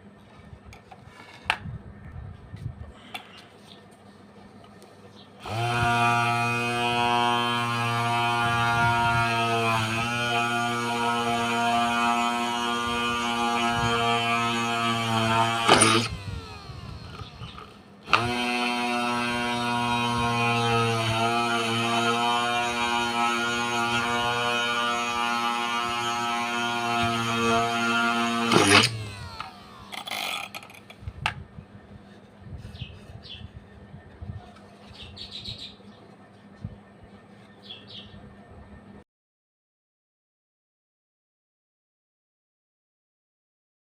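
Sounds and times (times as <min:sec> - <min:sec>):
electric motor whining: 0:05.4 - 0:31.4.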